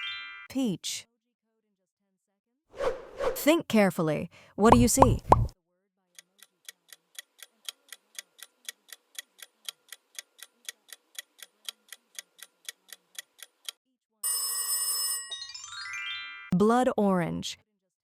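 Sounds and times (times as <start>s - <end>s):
countdown timer ticking: 4.7s - 5.5s.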